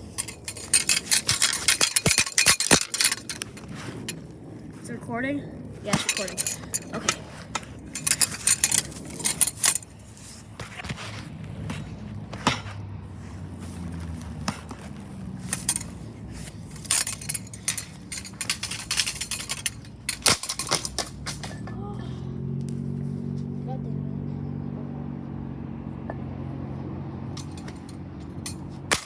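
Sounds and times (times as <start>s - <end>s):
plastic and glass parts rattling: 0.0s - 4.3s, 5.8s - 10.9s, 15.4s - 21.7s, 27.4s - 29.0s.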